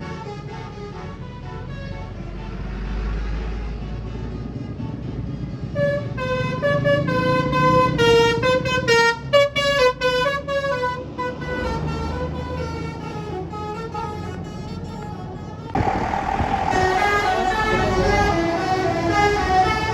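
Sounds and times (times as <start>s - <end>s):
bus horn melody: 0.0s - 15.0s, 15.7s - 19.9s
bus engine rumble: 0.0s - 19.9s.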